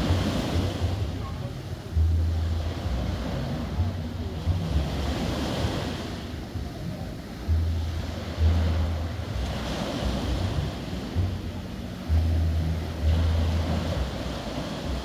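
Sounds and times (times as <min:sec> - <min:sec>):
surf washing onto beach: 0:00.0 - 0:01.9
wind buffeting microphone: 0:00.0 - 0:15.0.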